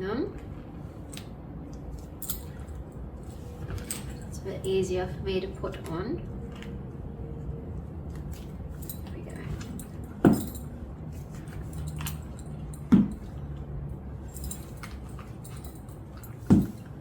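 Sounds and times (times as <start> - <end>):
metal buckles clinking: 2.0 - 4.9, 8.3 - 17.0.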